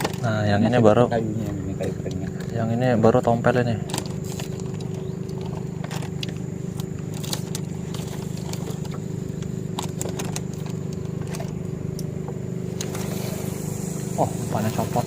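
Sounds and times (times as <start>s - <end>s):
low mechanical hum: 0.0s - 15.0s
dry wood cracking: 3.7s - 13.4s.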